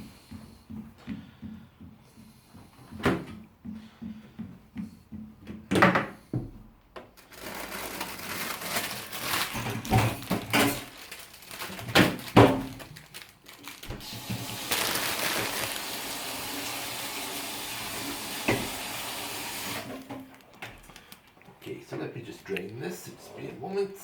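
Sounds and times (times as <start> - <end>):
pots and utensils clattering: 7.3 - 12.6.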